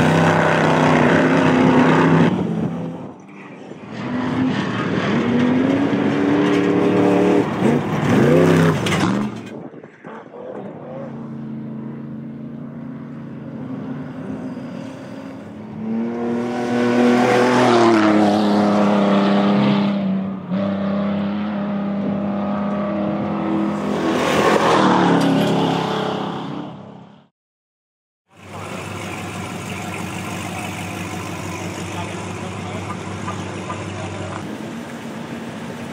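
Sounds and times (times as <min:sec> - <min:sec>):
racing vehicle engines revving: 0:00.0 - 0:27.0.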